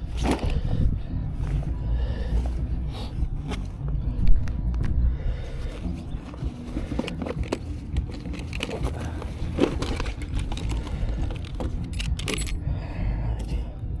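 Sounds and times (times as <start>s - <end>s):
steady low rumble: 0.0s - 14.0s
light clicks and metallic rattles: 6.9s - 12.6s.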